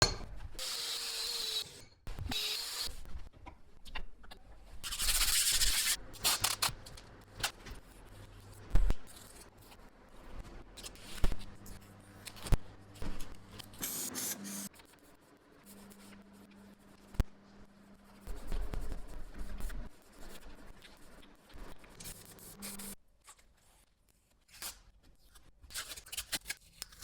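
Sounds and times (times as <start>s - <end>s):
sharp metal knocks: 0.0s - 0.4s.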